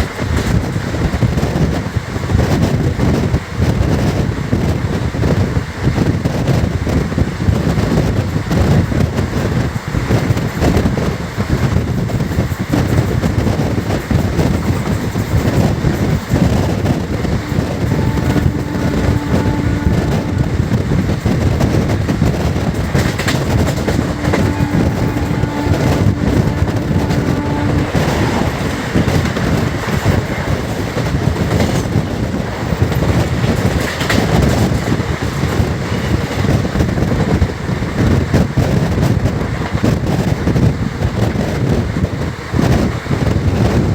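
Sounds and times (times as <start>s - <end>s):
clickety-clack of rail joints: 0.0s - 43.9s
train wheels rumbling: 0.0s - 43.9s
locomotive horn blasts: 16.8s - 31.1s.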